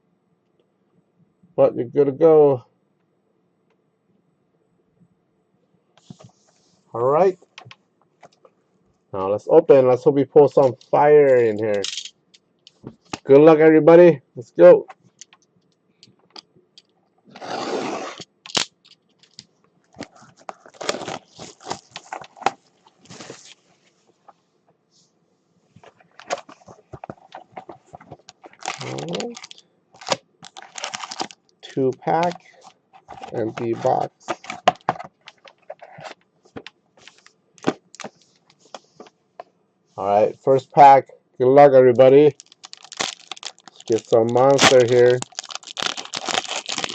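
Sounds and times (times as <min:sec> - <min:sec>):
wrapper and cardboard crinkling: 0:20.0 - 0:23.6, 0:26.0 - 0:31.4, 0:42.3 - 0:46.9
wrapping ripping: 0:20.1 - 0:22.4, 0:28.4 - 0:31.4, 0:42.3 - 0:46.9.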